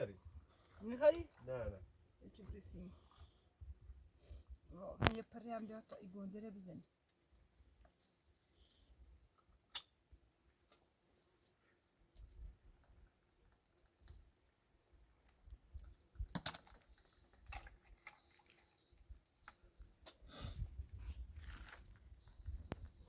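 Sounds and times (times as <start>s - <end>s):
small objects clicking and knocking: 15.2s - 20.2s.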